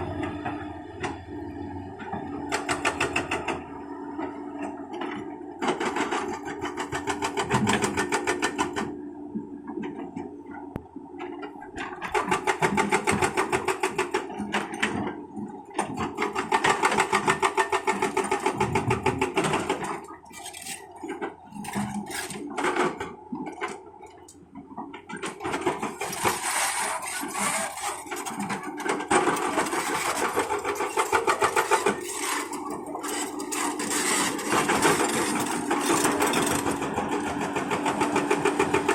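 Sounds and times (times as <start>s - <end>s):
diesel engine running: 26.0s - 38.9s.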